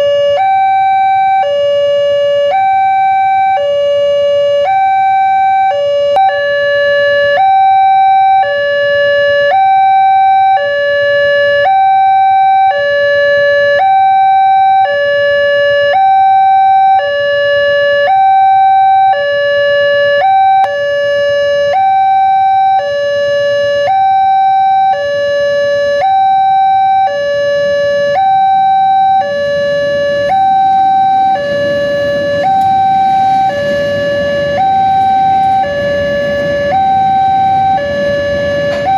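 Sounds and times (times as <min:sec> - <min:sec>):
level crossing two-tone alarm: 0:00.0 - 0:38.9
low rumbling noise: 0:27.8 - 0:38.9.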